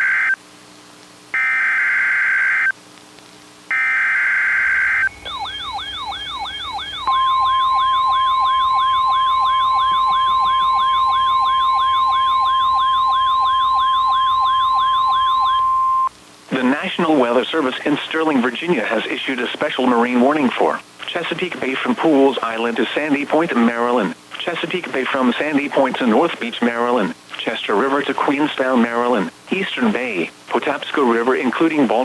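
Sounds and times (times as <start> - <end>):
buzzy data bursts: 3.7 - 16.0
sweeping siren-like tone: 3.8 - 16.1
steady alert tone: 5.0 - 16.1.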